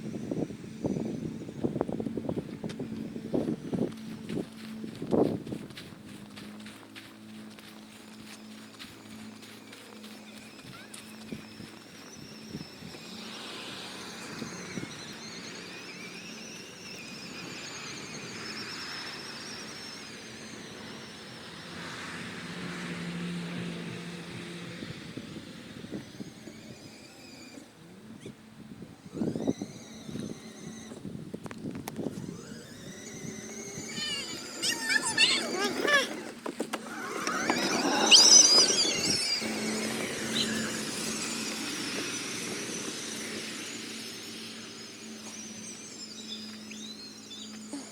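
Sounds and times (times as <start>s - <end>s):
electric motor whining: 0.0s - 47.9s
child squealing: 33.8s - 36.3s, 37.6s - 39.6s.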